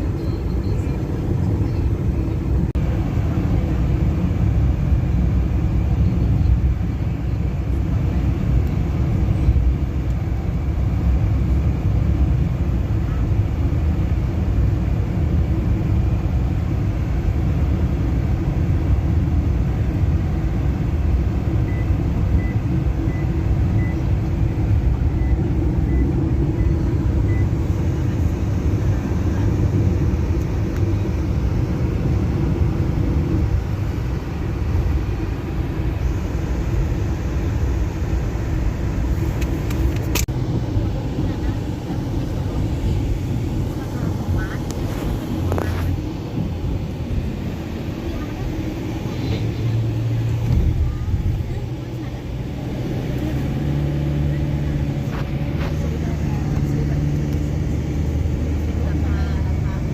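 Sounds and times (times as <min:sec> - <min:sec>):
car cabin road rumble: 0:00.0 - 0:59.9
faint short high beeps: 0:00.2 - 0:00.9.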